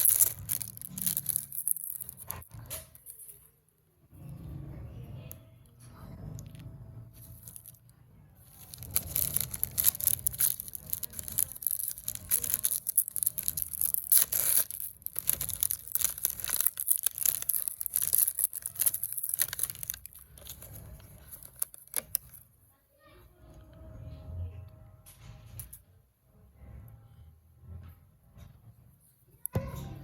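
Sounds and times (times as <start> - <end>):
plastic wrapper crinkling: 0.0 - 3.5, 6.3 - 22.5.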